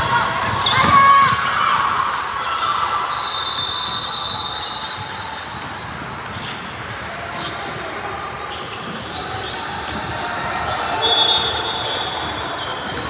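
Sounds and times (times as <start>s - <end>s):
ball bouncing on court: 0.0s - 2.1s, 3.9s - 7.8s, 8.6s - 13.0s
background hubbub: 0.0s - 13.0s.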